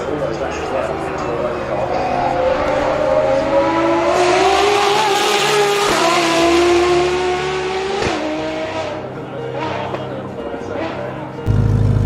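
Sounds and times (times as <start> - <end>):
car engine revving hard: 1.2 - 10.0.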